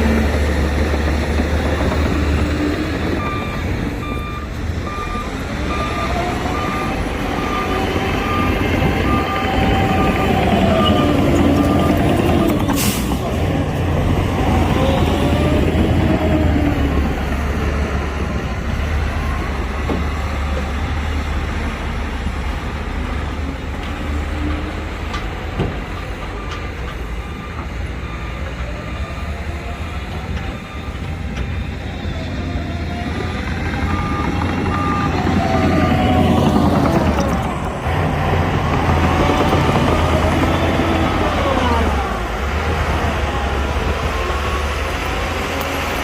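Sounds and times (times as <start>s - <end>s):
heavy diesel machines running: 0.0s - 46.0s
reversing alarm beeping: 1.8s - 13.2s, 26.2s - 37.8s.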